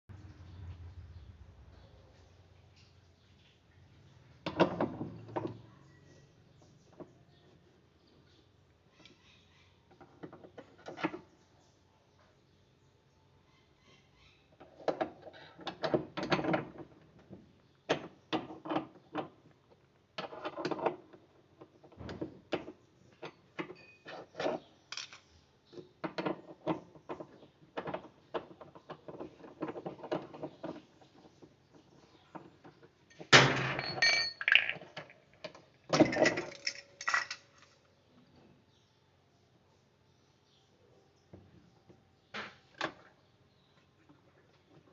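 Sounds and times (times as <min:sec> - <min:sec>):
tools and metal parts rattling: 0:32.4 - 0:37.9.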